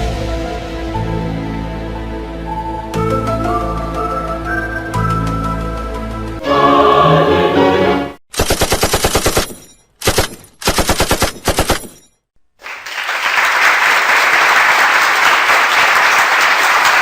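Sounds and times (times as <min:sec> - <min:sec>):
machine-gun shots: 0:08.3 - 0:12.0.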